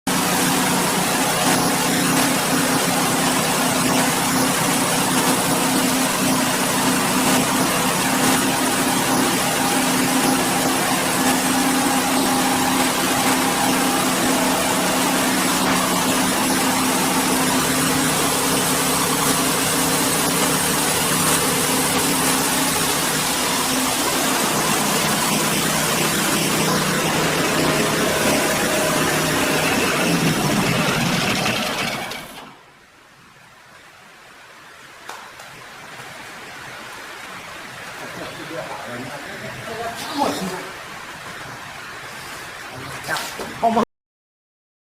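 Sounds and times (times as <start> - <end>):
saw blade whir: 0.1 - 32.6
sawmill engine hum: 0.1 - 32.7.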